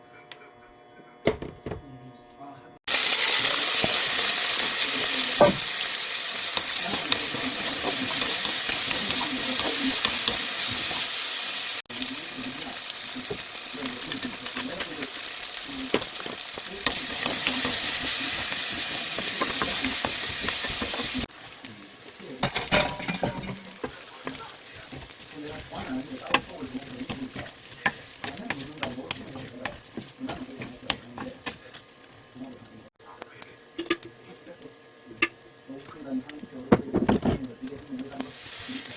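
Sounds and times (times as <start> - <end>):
food sizzling in frying pan: 2.9 - 38.9
spatula scraping and tapping pan: 6.5 - 11.2, 15.8 - 21.3, 22.4 - 31.8, 33.8 - 34.4.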